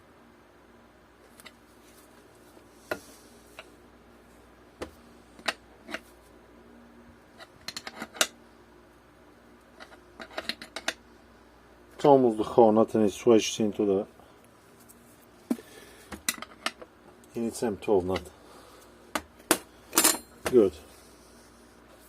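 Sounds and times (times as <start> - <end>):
metal tools clicking and clinking: 19.9 - 20.4.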